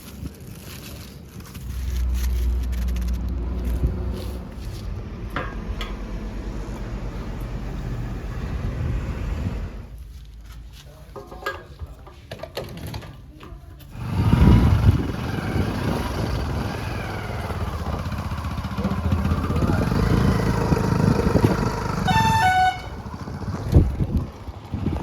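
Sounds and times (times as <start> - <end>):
backhoe diesel engine running: 1.7 - 10.0, 13.9 - 25.0
vehicle horn two-tone notes: 21.8 - 23.2.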